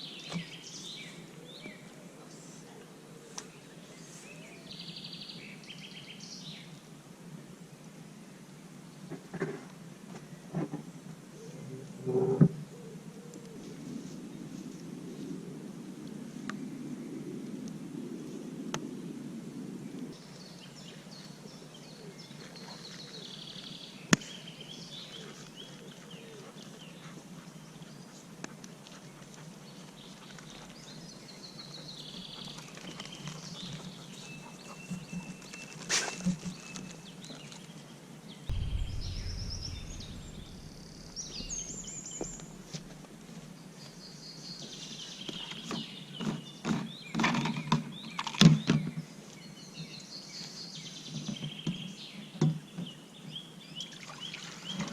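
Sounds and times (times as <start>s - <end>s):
low rumble: 38.5s - 43.4s.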